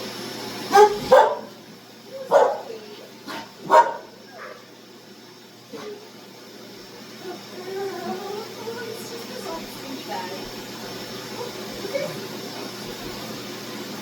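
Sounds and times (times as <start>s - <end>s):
vacuum cleaner running: 0.0s - 14.0s
puppy barking: 0.7s - 1.6s, 2.3s - 4.7s.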